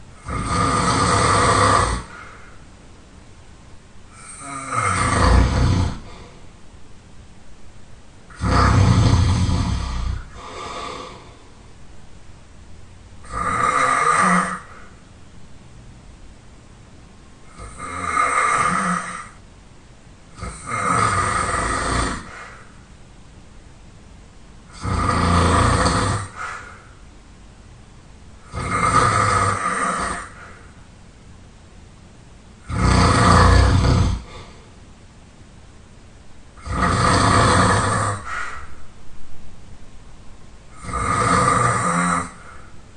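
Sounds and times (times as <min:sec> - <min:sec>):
person snoring loudly: 0:00.2 - 0:02.5, 0:04.1 - 0:06.3, 0:08.3 - 0:11.3, 0:13.2 - 0:15.0, 0:17.5 - 0:19.4, 0:20.4 - 0:22.7, 0:24.7 - 0:26.8, 0:28.4 - 0:30.6, 0:32.6 - 0:34.6, 0:36.6 - 0:38.6, 0:40.7 - 0:42.7.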